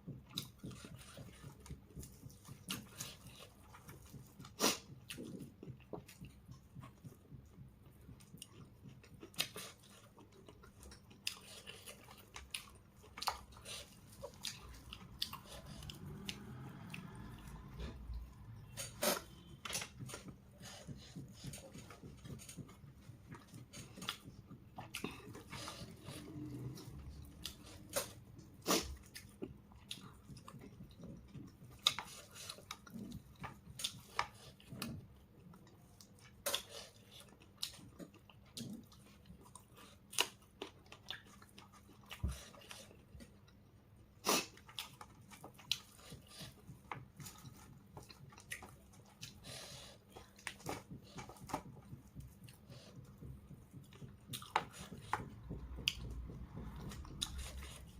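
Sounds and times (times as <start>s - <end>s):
person chewing and biting food: 0.1s - 57.9s.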